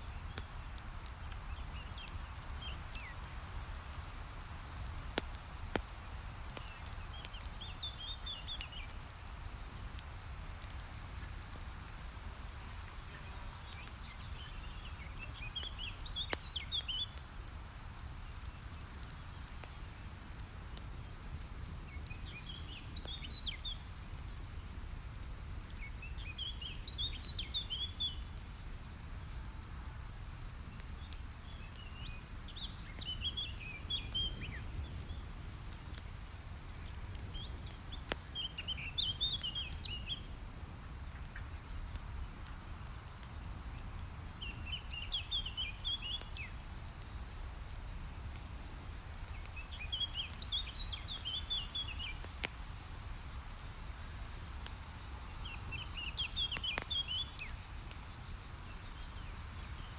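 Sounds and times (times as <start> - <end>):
campfire crackling pops: 0.0 - 59.9
songbird twittering: 37.3 - 40.2.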